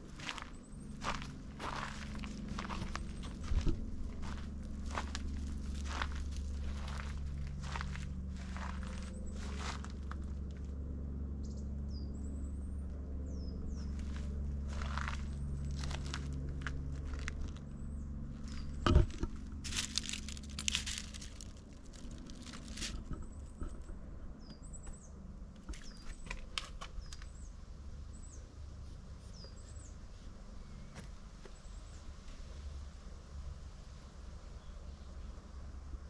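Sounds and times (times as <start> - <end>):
rustling and crunching: 0.0 - 10.8, 13.8 - 27.5
low hum: 0.0 - 36.0
bird chirping: 17.1 - 20.6, 22.1 - 28.5.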